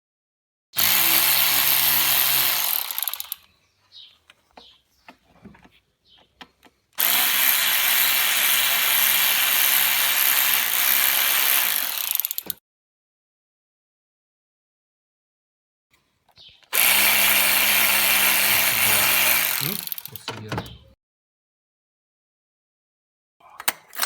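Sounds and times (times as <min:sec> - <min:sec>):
cordless power tool motor running: 0:00.8 - 0:03.4, 0:07.0 - 0:12.5, 0:16.7 - 0:20.2.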